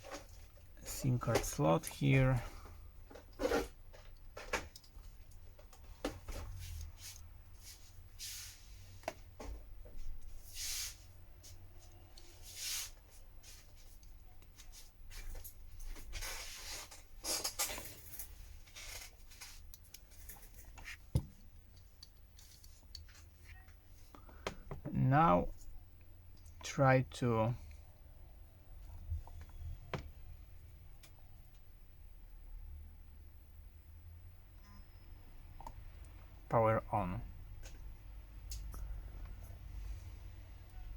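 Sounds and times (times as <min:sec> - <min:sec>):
scraping and rubbing noises: 0:03.1 - 0:03.8, 0:10.4 - 0:14.0, 0:14.6 - 0:21.1.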